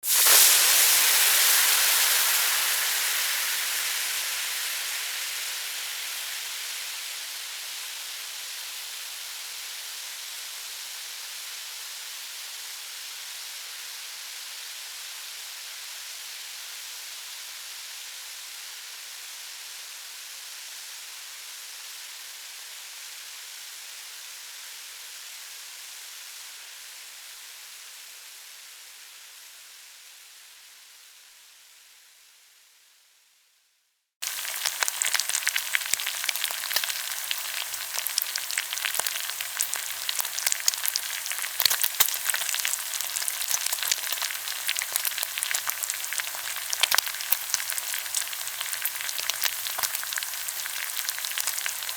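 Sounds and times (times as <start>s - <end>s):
frying pan sizzling: 0.0s - 7.4s, 34.2s - 51.9s.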